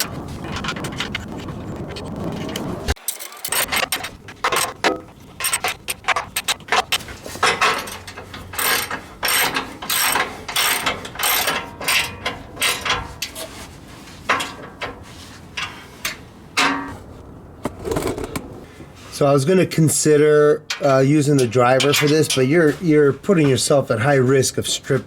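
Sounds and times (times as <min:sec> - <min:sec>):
ratchet wrench clicking: 0:08.6 - 0:12.1.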